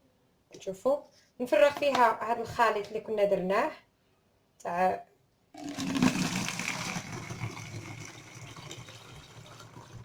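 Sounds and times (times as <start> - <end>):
liquid pouring into a bottle: 5.6 - 10.0.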